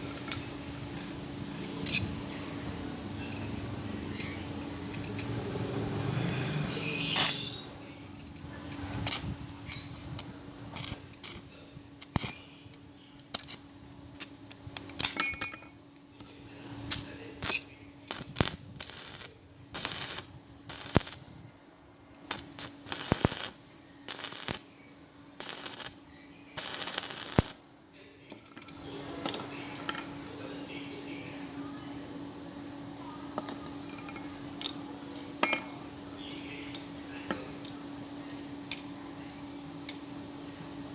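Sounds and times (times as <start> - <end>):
metal pieces knocking and clinking: 0.0 - 0.6, 14.9 - 15.8, 28.3 - 30.2, 33.4 - 37.5
steady low hum: 0.0 - 40.9
short sharp noisy bursts: 22.3 - 24.8, 26.6 - 27.6.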